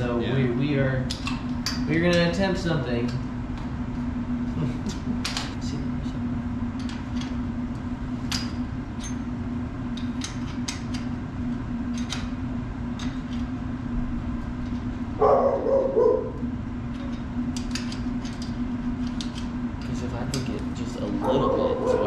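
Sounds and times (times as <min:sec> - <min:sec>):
steady low hum: 0:00.0 - 0:22.0
dog barking: 0:15.2 - 0:16.4, 0:21.2 - 0:22.0.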